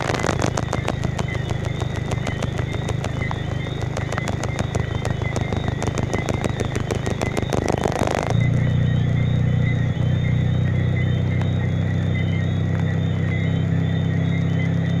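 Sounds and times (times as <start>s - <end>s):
rain drops ticking on hard surface: 0.0s - 8.8s, 11.4s - 13.4s
steady low hum: 0.0s - 15.0s.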